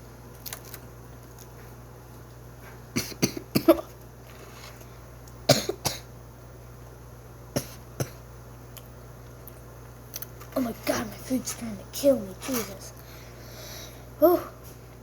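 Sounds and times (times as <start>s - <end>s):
person coughing: 3.0s - 3.9s, 5.5s - 6.1s, 7.6s - 8.2s.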